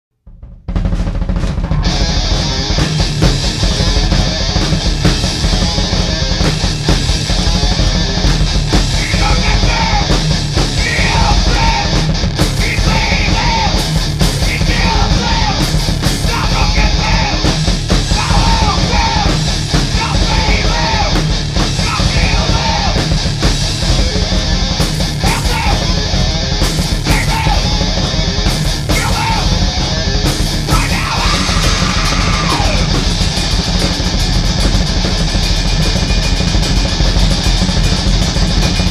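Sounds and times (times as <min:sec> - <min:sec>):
rock band playing distorted music: 0:00.7 - 0:38.9
person yelling vocals: 0:09.0 - 0:10.2, 0:10.8 - 0:12.0, 0:12.6 - 0:13.8, 0:14.4 - 0:17.5, 0:18.1 - 0:21.2, 0:21.8 - 0:23.1, 0:25.2 - 0:26.1, 0:27.0 - 0:27.9, 0:28.9 - 0:30.0, 0:30.7 - 0:33.0.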